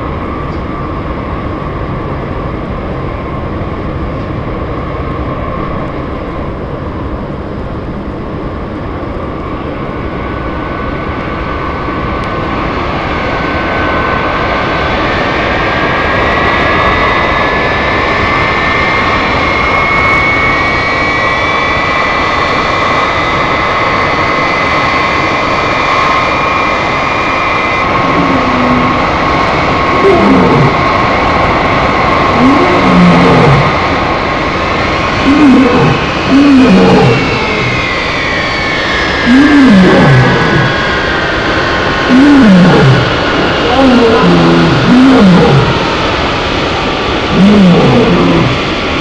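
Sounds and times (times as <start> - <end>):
engine roar: 0.0 - 49.0
high whines rising in pitch: 26.7 - 49.0.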